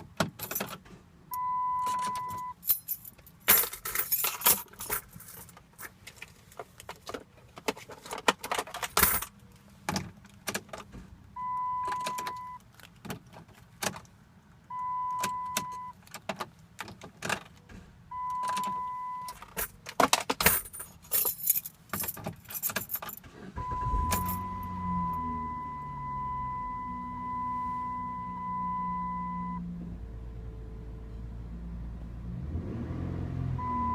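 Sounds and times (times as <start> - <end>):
keys jangling and clicking: 0.3 - 0.8, 1.8 - 6.2, 8.1 - 9.4, 18.4 - 23.3, 23.9 - 24.5
dashboard warning chimes: 1.3 - 2.7, 11.4 - 12.6, 14.7 - 16.0, 18.1 - 19.5, 23.6 - 29.7, 33.6 - 33.9
car engine starting and running: 22.2 - 33.9.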